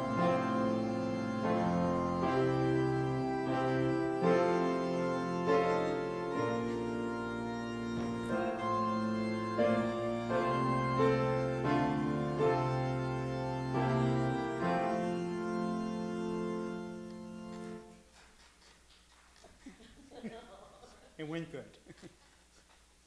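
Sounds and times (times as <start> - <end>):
organ chords: 0.0 - 18.2.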